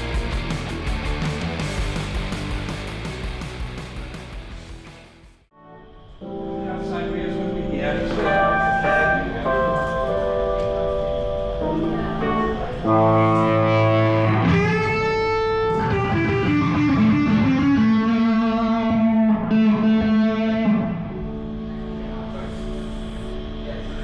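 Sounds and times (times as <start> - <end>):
guitar-led rock music: 0.0 - 5.3, 12.2 - 23.7.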